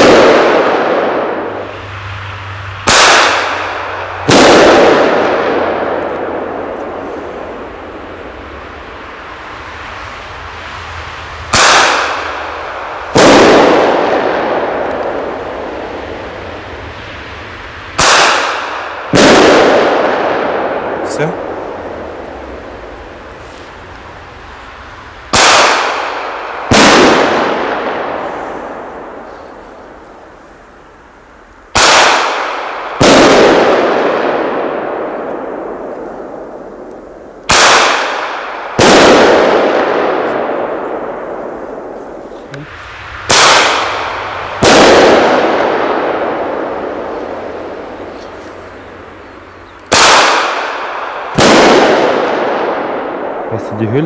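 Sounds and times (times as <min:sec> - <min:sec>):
pistol launch shot: 0:00.0 - 0:01.6, 0:02.8 - 0:07.6, 0:11.5 - 0:16.1, 0:17.9 - 0:22.0, 0:25.3 - 0:30.0, 0:31.7 - 0:48.4, 0:49.9 - 0:53.5
banger bursting in the air: 0:00.0 - 0:29.2, 0:37.5 - 0:48.6
long echo: 0:00.0 - 0:30.8, 0:31.7 - 0:54.0.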